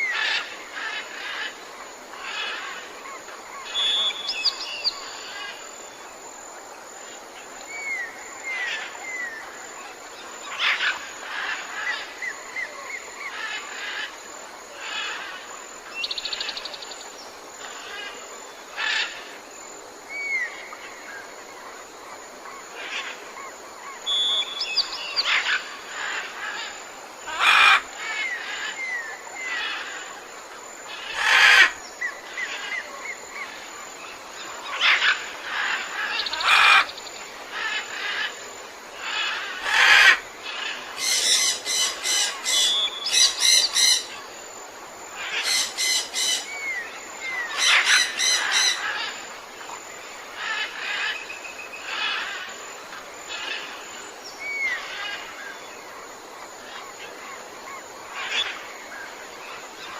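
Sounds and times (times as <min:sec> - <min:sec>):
background hiss: 0:00.0 - 0:59.9
rattling bird chatter calls: 0:47.5 - 0:49.1.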